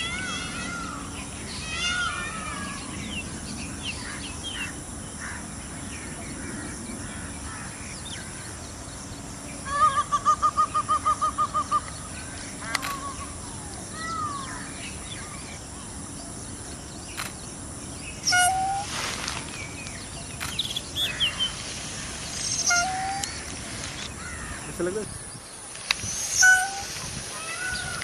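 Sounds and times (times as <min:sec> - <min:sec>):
peafowl calling: 0:09.6 - 0:14.8, 0:18.2 - 0:19.4, 0:20.4 - 0:24.8, 0:26.0 - 0:28.0
rapid bird call notes: 0:18.2 - 0:19.3, 0:20.4 - 0:25.0, 0:25.9 - 0:28.0
bird chirps: 0:19.6 - 0:21.6, 0:22.3 - 0:28.0.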